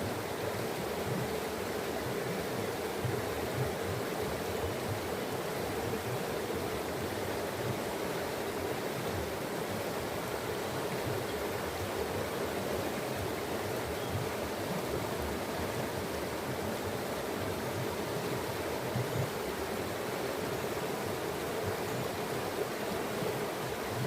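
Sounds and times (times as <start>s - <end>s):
water rushing: 0.0s - 24.0s.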